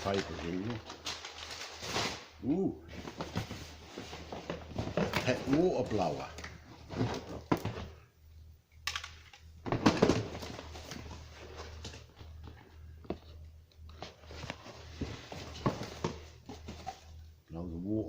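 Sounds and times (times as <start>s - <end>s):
packaging rustling and crinkling: 0.0s - 8.0s, 9.7s - 17.3s.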